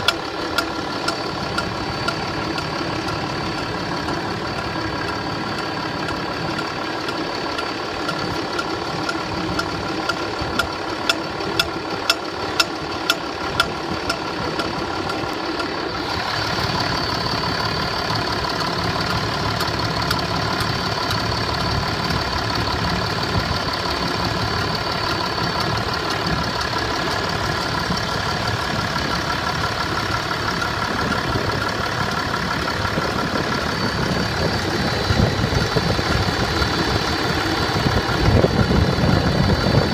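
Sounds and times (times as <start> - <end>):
engine idling: 0.0 - 39.9
engine knocking: 0.0 - 39.9.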